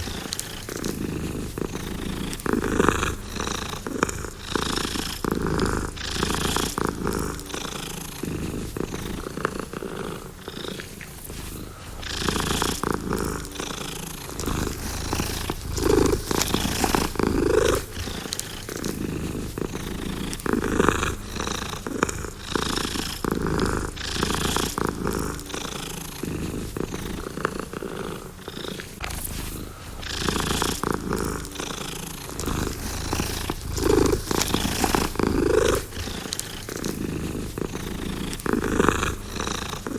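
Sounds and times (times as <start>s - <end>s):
cat purring: 0.0s - 39.9s.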